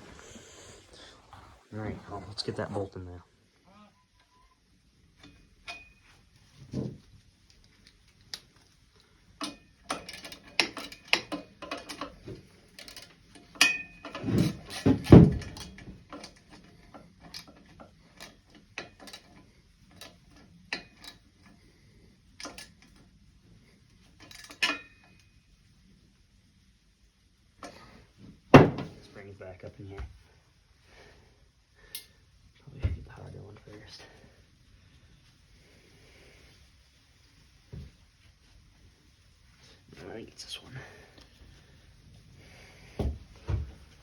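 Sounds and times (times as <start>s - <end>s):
hand tools clicking on metal: 9.4s - 14.8s, 15.5s - 21.6s
heavy metal clunk and rattle: 13.6s - 16.3s.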